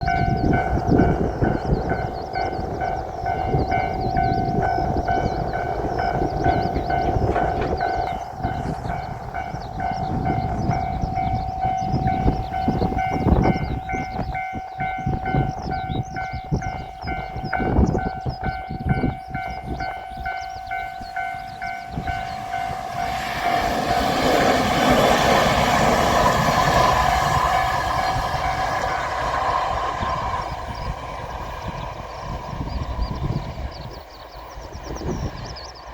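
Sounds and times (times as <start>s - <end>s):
level-crossing alarm ringing: 0.0s - 31.8s
train wheels clattering: 0.3s - 33.4s.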